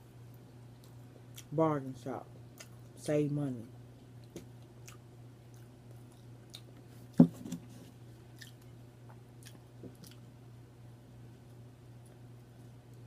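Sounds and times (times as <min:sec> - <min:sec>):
person chewing: 0:04.0 - 0:07.2, 0:08.2 - 0:10.3.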